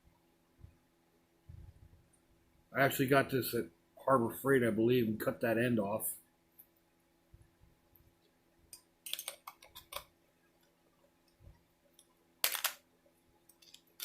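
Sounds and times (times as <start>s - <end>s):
small metal tools clicking: 9.0s - 10.0s, 13.5s - 14.0s.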